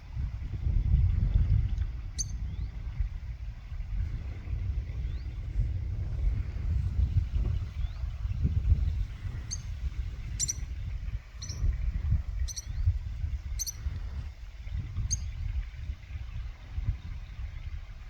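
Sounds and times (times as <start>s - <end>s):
wind rumble on microphone: 0.0s - 18.0s
small bird chirping: 9.3s - 11.7s, 12.4s - 12.9s, 13.5s - 13.8s.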